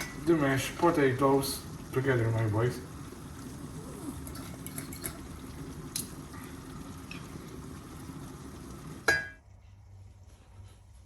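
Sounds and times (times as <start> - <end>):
pots bubbling and simmering: 0.0 - 11.0.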